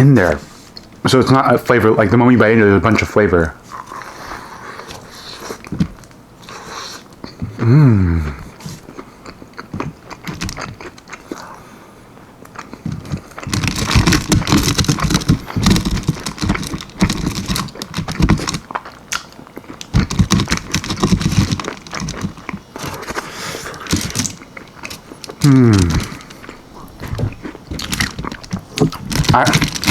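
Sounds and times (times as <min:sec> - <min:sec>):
crunchy biting and chewing: 0:03.6 - 0:29.9.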